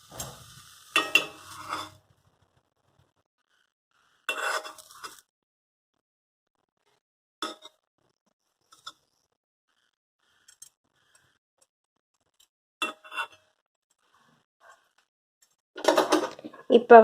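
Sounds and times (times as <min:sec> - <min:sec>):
kitchen utensils clicking and knocking: 0:15.8 - 0:16.7.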